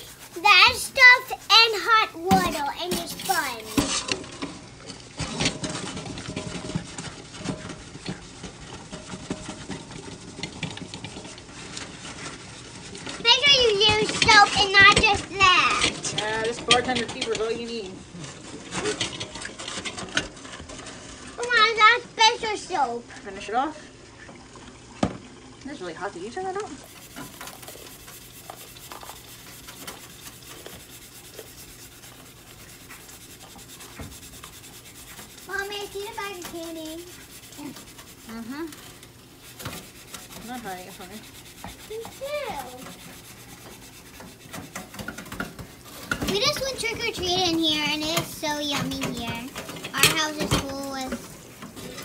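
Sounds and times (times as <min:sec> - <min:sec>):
metal coffee pot clattering: 0:00.0 - 0:12.4, 0:13.0 - 0:21.4, 0:31.5 - 0:52.0.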